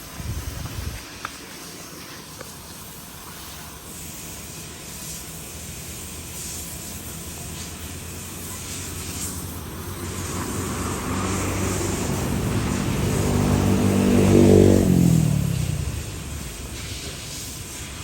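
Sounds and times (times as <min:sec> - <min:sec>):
airplane passing overhead: 0:07.8 - 0:18.0.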